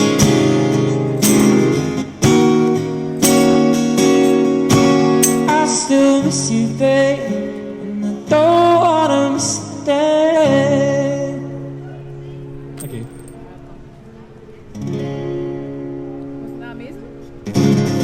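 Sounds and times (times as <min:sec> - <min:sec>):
acoustic guitar chords: 0:00.0 - 0:18.0
wordless voice singing: 0:05.3 - 0:12.1.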